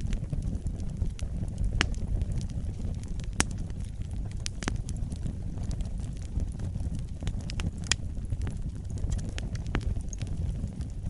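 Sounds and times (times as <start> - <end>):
fire crackling and popping: 0.0 - 11.0
fire flames rumbling: 0.0 - 11.0.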